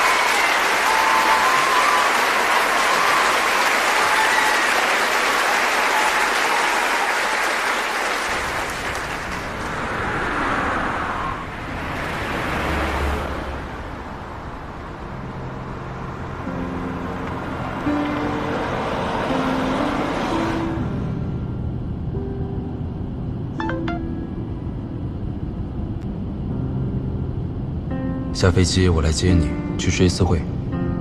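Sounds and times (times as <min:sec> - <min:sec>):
audience applauding: 0:00.0 - 0:10.1
music: 0:15.0 - 0:31.0
low steady rumble: 0:21.0 - 0:28.8.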